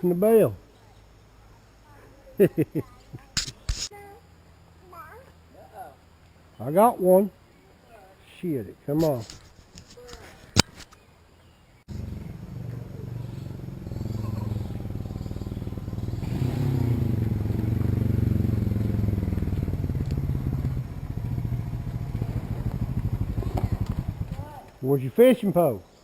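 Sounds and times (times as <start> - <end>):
small engine running: 11.9 - 24.4.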